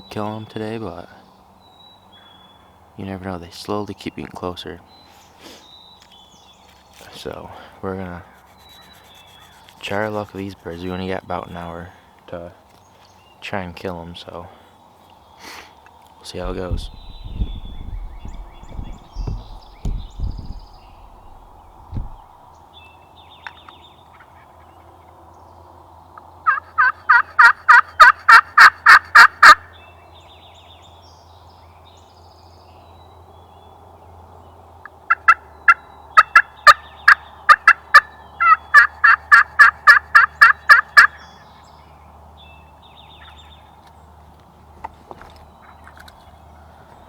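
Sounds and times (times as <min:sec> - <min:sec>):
turkey calling: 0:08.2 - 0:11.6, 0:26.5 - 0:29.6, 0:35.1 - 0:41.3
soft thumps: 0:16.5 - 0:22.5.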